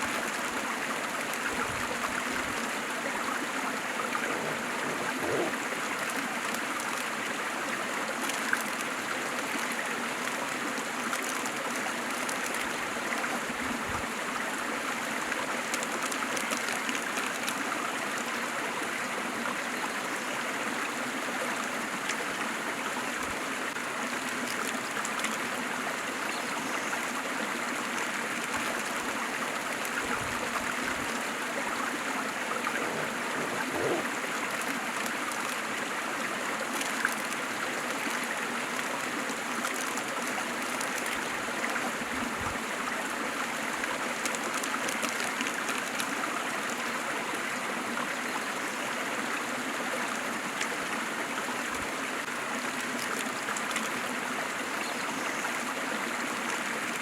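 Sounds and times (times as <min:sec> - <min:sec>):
waterfall rushing: 0:03.9 - 0:05.7, 0:32.5 - 0:34.1.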